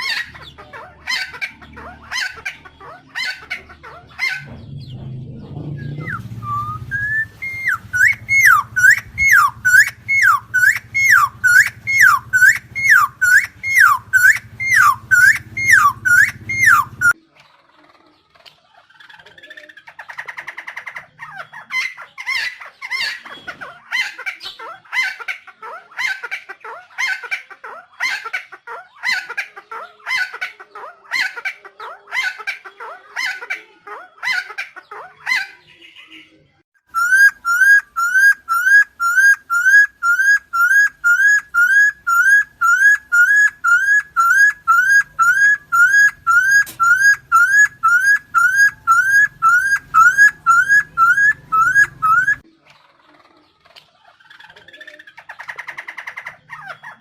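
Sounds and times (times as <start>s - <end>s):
harsh rising bird calls: 0.0s - 17.2s, 36.9s - 52.5s
rising whistled notes: 4.4s - 17.2s, 37.0s - 52.4s.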